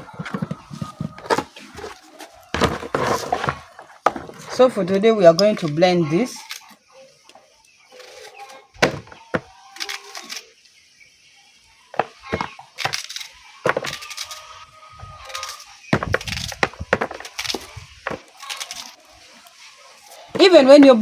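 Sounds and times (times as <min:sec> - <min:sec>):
onions and garlic cracking: 0:08.0 - 0:10.5, 0:12.0 - 0:20.6.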